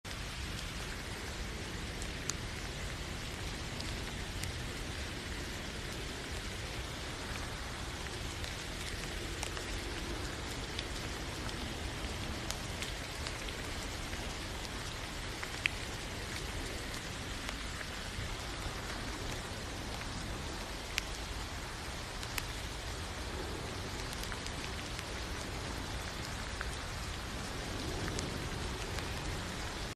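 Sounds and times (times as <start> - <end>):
raindrops ticking: 0.0 - 29.9
steady rain hissing: 0.0 - 29.9.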